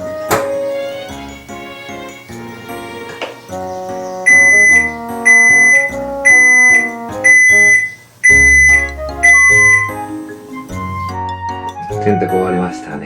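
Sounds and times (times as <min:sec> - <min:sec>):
background music: 0:00.0 - 0:13.0
washing machine beeps: 0:04.2 - 0:10.7.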